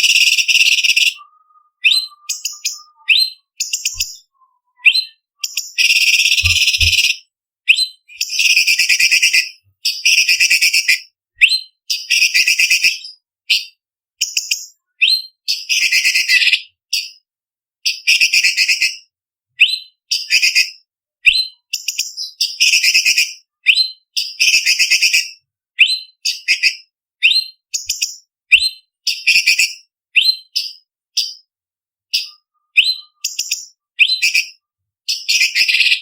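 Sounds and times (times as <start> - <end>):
bird singing whistled notes: 0.0 - 17.2, 19.6 - 31.4, 32.1 - 36.0
bird chattering bursts: 5.6 - 7.2.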